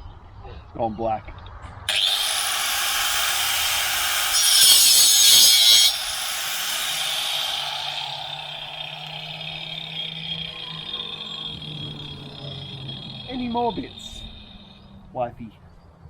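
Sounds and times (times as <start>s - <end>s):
angle grinder cutting wood: 1.9s - 15.0s.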